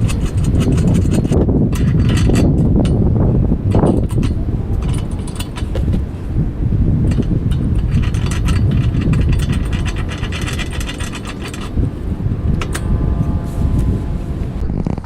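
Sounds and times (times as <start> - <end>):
ratchet wrench clicking: 0.0 - 3.0, 3.7 - 6.0, 7.0 - 11.9, 12.5 - 13.0
metal clink: 3.7 - 6.0, 7.0 - 11.9, 12.5 - 13.0.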